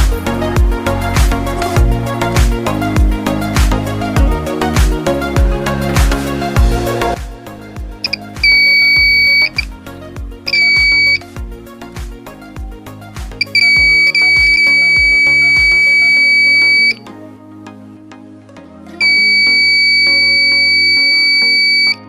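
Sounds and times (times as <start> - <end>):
background music with a beat: 0.0 - 22.0
door alarm buzzer tone: 8.1 - 9.6, 10.5 - 11.2, 13.4 - 17.0, 19.0 - 22.0.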